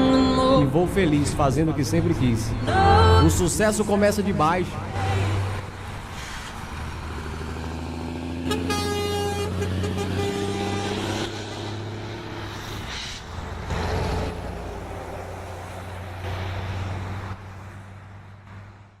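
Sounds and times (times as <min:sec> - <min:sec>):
truck engine running: 0:00.0 - 0:17.6
truck air horn: 0:08.4 - 0:11.4
hissing bursts: 0:12.4 - 0:13.6.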